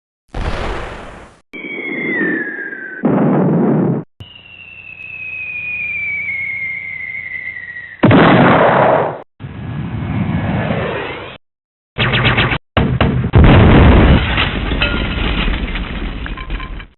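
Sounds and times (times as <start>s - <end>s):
explosion: 0.3s - 4.1s, 8.0s - 11.4s, 13.2s - 16.9s
falling bomb whistle: 1.6s - 3.3s, 4.2s - 8.0s.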